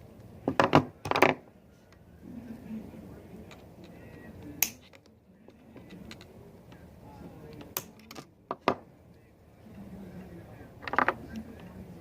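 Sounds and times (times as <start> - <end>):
faint room murmur: 0.0 - 12.0
small parts clicking and tapping: 7.5 - 8.8.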